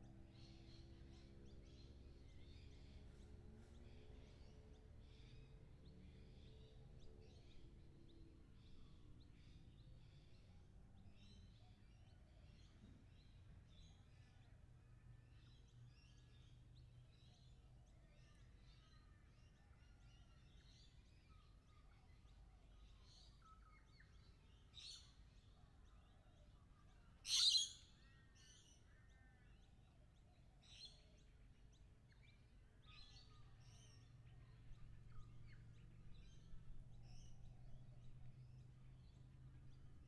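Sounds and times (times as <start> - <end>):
lorikeets chattering: 27.3 - 27.8.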